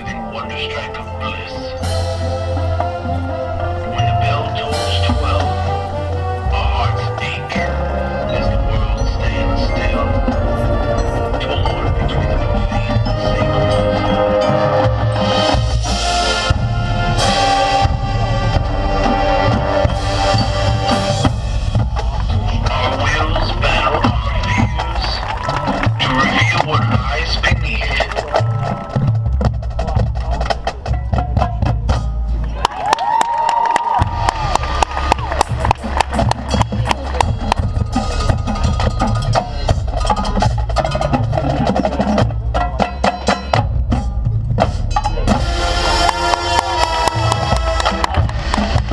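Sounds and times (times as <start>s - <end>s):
brass holding sustained chords: 0.0s - 24.7s, 45.3s - 48.9s
marching band playing: 0.0s - 48.9s
drumline drum strokes: 1.6s - 48.9s.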